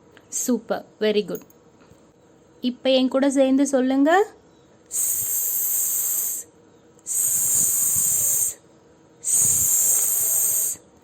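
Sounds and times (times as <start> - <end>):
woman making hissing sss sound: 4.9 - 6.5, 7.1 - 8.6, 9.2 - 10.9.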